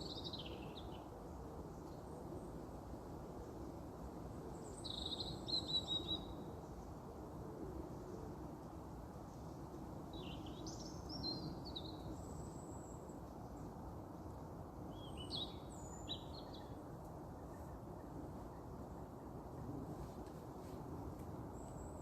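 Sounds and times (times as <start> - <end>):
songbird singing: 0.0 - 1.1, 4.5 - 7.1, 7.9 - 19.8, 21.1 - 22.0.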